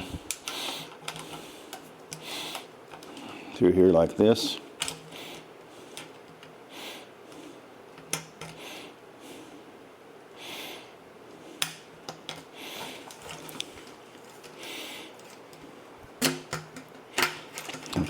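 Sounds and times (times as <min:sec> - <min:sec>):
soft breathing: 0:00.0 - 0:03.6, 0:05.0 - 0:07.8, 0:08.5 - 0:11.6, 0:12.5 - 0:13.8, 0:14.4 - 0:16.0.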